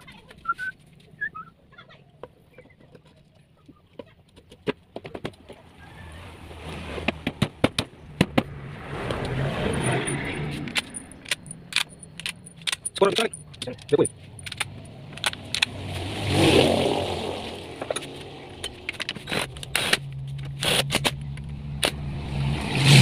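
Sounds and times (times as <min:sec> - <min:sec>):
metallic clinks of tools: 0:09.7 - 0:15.5.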